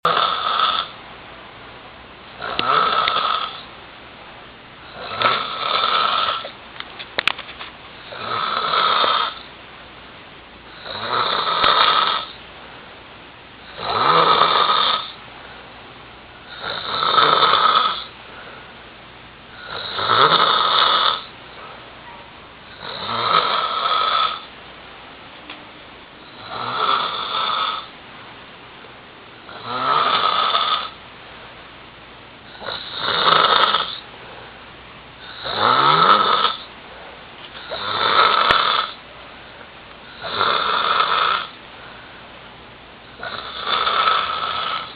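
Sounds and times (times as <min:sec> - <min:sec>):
man snoring heavily: 0:00.0 - 0:00.9, 0:02.4 - 0:03.6, 0:04.9 - 0:06.5, 0:08.1 - 0:09.5, 0:10.7 - 0:12.4, 0:13.7 - 0:15.2, 0:16.5 - 0:18.2, 0:19.5 - 0:21.3, 0:22.7 - 0:24.5, 0:26.3 - 0:27.9, 0:29.5 - 0:31.0, 0:32.5 - 0:34.0, 0:35.2 - 0:36.7, 0:37.6 - 0:39.0, 0:40.1 - 0:41.6, 0:43.2 - 0:44.9
quiet breathing: 0:18.0 - 0:18.9.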